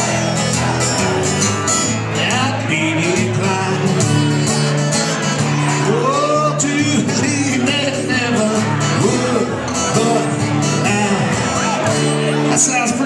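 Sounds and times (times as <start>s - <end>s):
guitar music: 0.0s - 13.0s
person singing: 1.8s - 4.4s, 5.4s - 13.0s.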